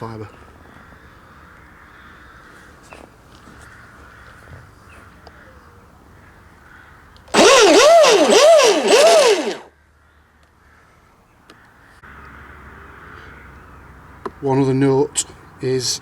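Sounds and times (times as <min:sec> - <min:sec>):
electric motor whine revving: 0:07.3 - 0:09.7.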